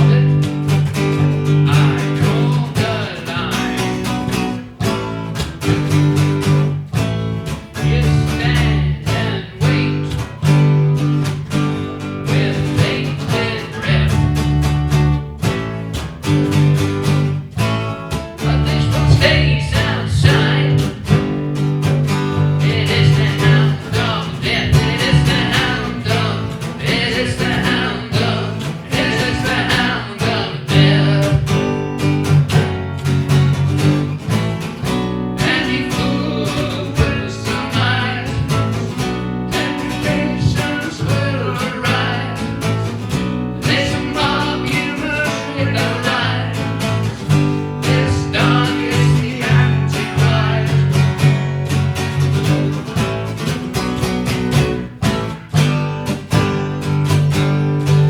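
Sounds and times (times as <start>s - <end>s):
person singing: 0.0s - 0.7s, 7.8s - 10.4s, 12.2s - 14.4s, 18.4s - 21.3s, 22.4s - 31.8s, 35.4s - 42.7s, 43.6s - 46.8s, 47.8s - 51.0s
acoustic guitar strumming: 0.0s - 58.0s.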